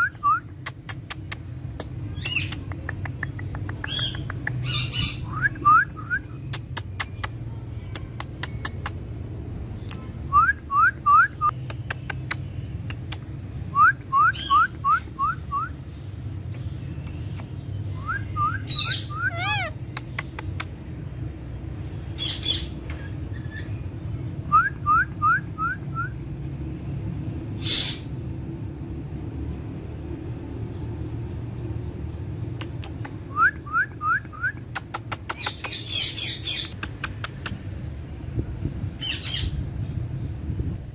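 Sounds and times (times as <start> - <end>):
sharp clicks: 0.6 - 4.6, 19.9 - 20.8, 32.5 - 33.2, 36.6 - 37.6
parrot squawks: 18.7 - 19.8.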